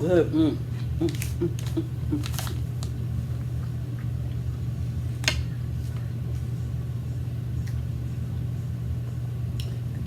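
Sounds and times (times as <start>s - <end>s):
steady low hum: 0.0s - 10.0s
eating sounds: 0.4s - 4.4s.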